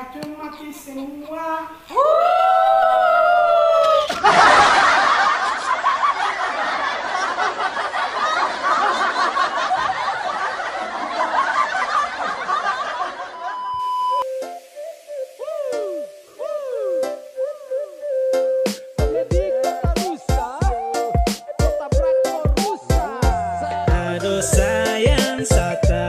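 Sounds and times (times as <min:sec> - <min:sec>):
group of people laughing: 0:02.4 - 0:13.8
steady beep tone: 0:13.4 - 0:14.6.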